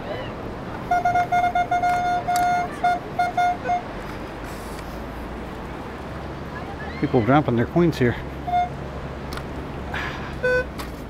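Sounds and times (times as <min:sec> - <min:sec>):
metal detector beeps: 0:10.4 - 0:10.7.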